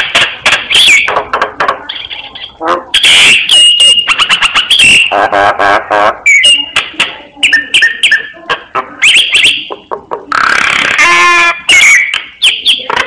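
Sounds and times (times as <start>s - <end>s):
bird whistles and clicks: 0.7s - 1.2s, 7.4s - 8.3s, 11.7s - 13.0s.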